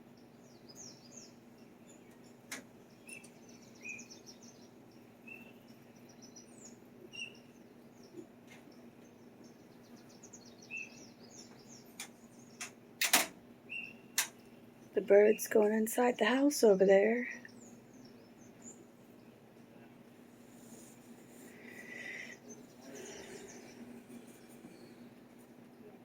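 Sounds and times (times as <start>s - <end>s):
faint steady low hum: 0.0s - 26.0s
small birds chirping: 0.0s - 26.0s
sharp clicks: 12.0s - 13.4s, 14.2s - 14.4s.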